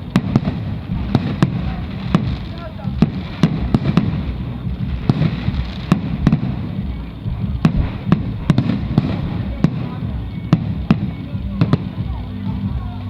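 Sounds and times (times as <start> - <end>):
fireworks bangs: 0.0 - 13.0
low rumble of fireworks barrage: 0.0 - 13.0.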